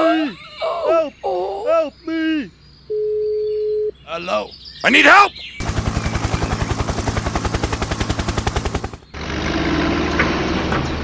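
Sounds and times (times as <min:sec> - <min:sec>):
steady engine hum: 0:04.0 - 0:11.0
fast mechanical chugging: 0:05.6 - 0:09.1.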